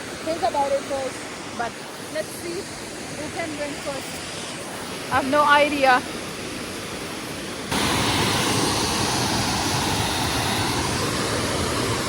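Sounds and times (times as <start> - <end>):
waterfall rushing: 0.0 - 12.0.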